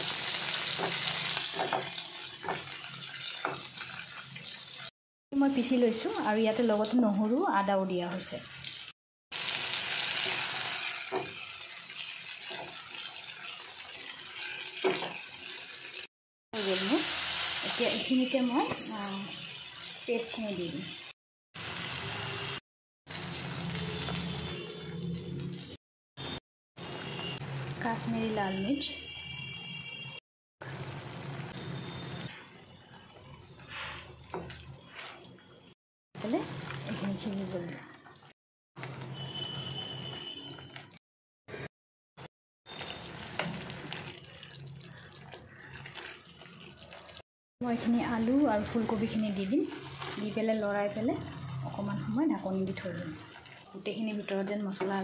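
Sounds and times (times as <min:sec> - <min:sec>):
food sizzling in oil: 0:00.0 - 0:25.8, 0:30.6 - 0:35.5, 0:42.7 - 0:54.9.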